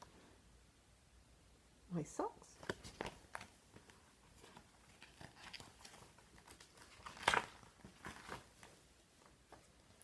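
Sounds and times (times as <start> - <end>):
paper pages rustling: 2.6 - 10.0.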